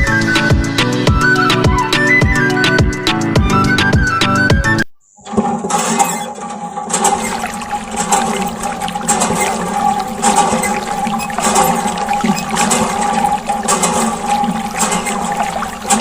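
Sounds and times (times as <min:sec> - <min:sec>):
electric pump motor hum: 0:06.8 - 0:16.0
water gushing and splashing: 0:06.9 - 0:16.0.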